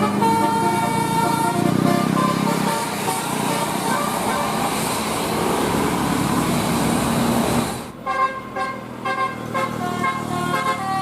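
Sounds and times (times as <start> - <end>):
multi-tone air horn chord: 0.0 - 4.8, 8.0 - 11.0
vehicle engine and road noise: 0.0 - 11.0.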